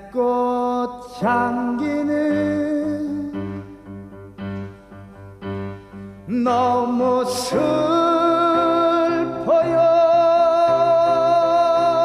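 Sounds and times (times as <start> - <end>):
piano chords: 0.0 - 12.0
man singing long held note: 6.3 - 12.0.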